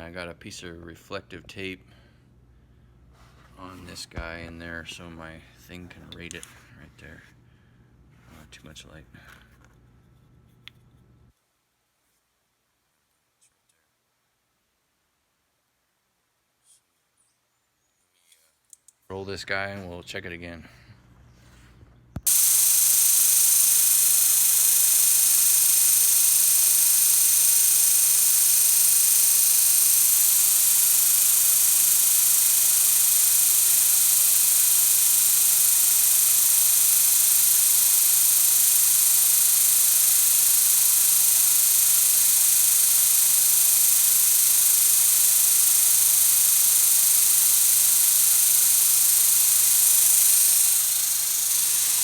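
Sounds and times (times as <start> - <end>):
welder engine humming: 22.2 - 52.0.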